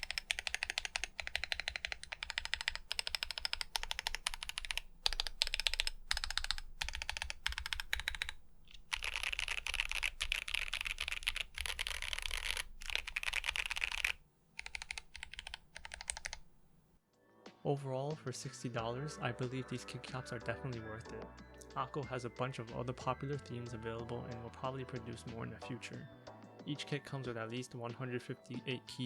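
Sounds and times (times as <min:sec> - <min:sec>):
mechanical keyboard typing: 0:00.0 - 0:16.7.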